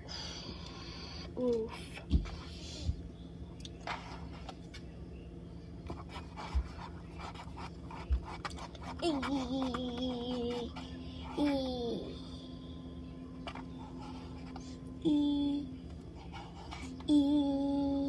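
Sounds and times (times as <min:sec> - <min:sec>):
person humming: 0:15.0 - 0:15.8, 0:17.0 - 0:18.0.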